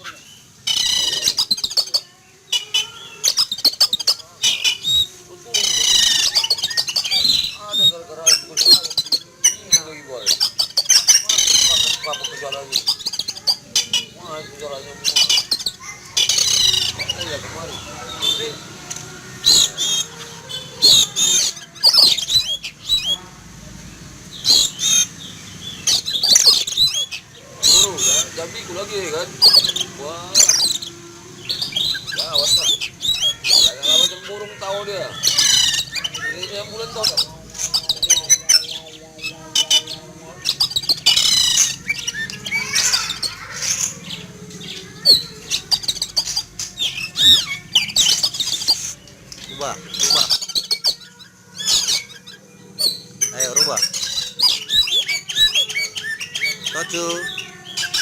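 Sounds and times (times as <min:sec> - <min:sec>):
bird calling whistles and rasps: 0:00.0 - 0:23.2, 0:24.2 - 0:58.0
bird whistling sharp notes: 0:24.4 - 0:38.7.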